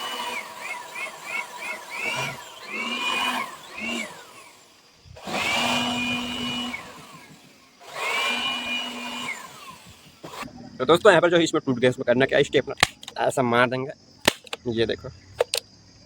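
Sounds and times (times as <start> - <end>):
power tool motor whining: 0.0 - 10.5.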